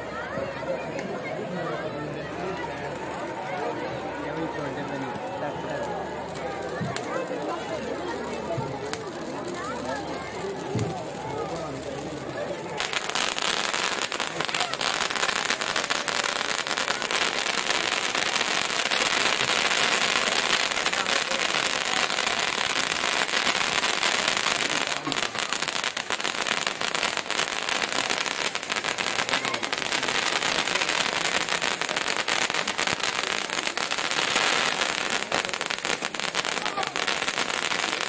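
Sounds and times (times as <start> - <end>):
fireworks crackling: 0.0 - 38.0.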